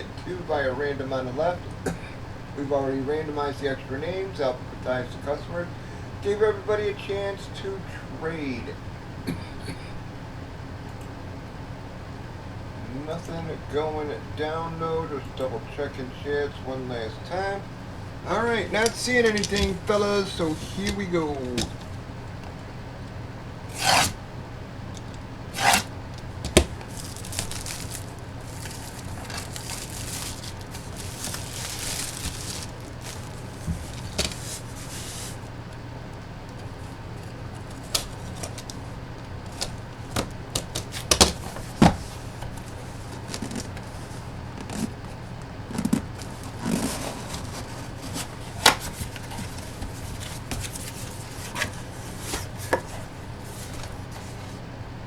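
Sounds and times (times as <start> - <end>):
steady low hum: 0.0 - 55.0
cardboard and plastic packaging handled: 18.3 - 22.6, 23.7 - 24.2, 24.9 - 35.7, 36.4 - 54.6.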